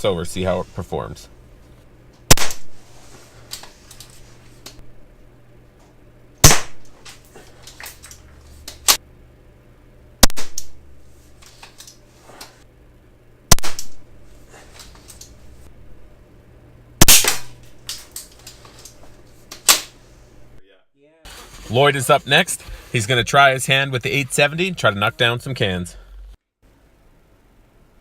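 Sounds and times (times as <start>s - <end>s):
airsoft shotgun shots: 2.3s - 2.8s, 6.4s - 6.8s, 10.2s - 10.8s, 13.5s - 14.0s, 17.0s - 17.6s.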